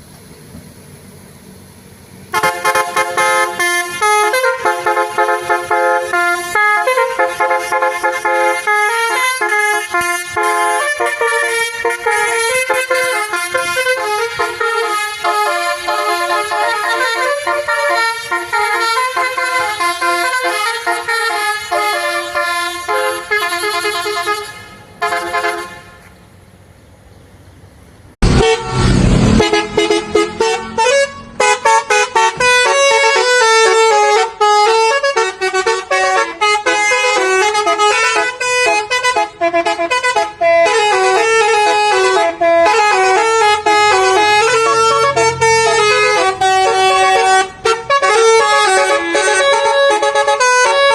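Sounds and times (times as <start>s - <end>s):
bus musical horn playing a tune: 2.3s - 26.1s, 28.2s - 50.9s
loud low thump: 28.2s - 29.5s.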